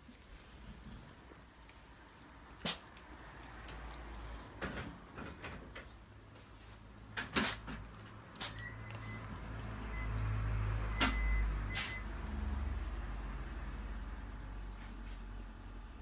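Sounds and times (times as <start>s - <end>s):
dog sneezing: 2.6s - 2.9s, 7.3s - 8.6s, 11.8s - 12.0s
dog sniffing: 2.6s - 4.4s, 7.4s - 9.9s, 11.7s - 12.0s.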